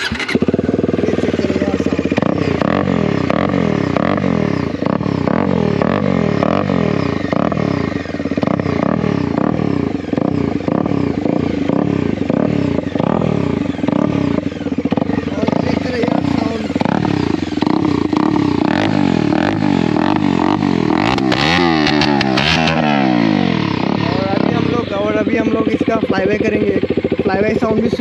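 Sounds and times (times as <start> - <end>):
motorcycle engine idling loudly: 0.0 - 28.0.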